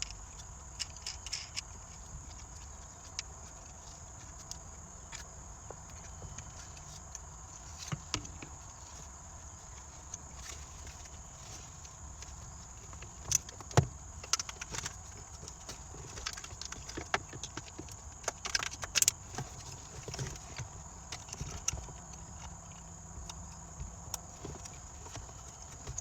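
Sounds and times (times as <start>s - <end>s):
plastic parts clicking and rattling: 0.0s - 3.3s, 12.2s - 23.5s, 24.1s - 26.0s.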